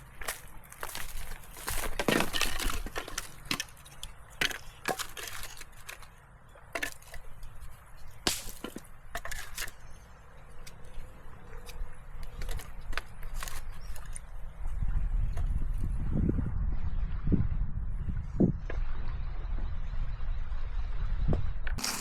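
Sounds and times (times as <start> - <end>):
dry sticks snapping: 0.0 - 6.1, 6.8 - 9.8.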